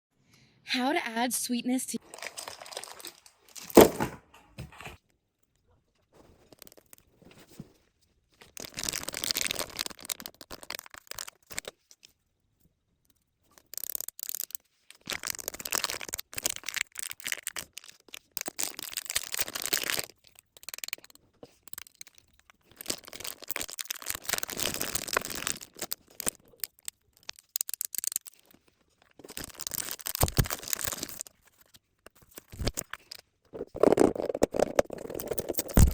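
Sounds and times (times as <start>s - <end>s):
packaging being torn and crinkled: 2.1s - 4.1s, 8.4s - 11.8s, 13.5s - 28.6s, 29.2s - 35.9s.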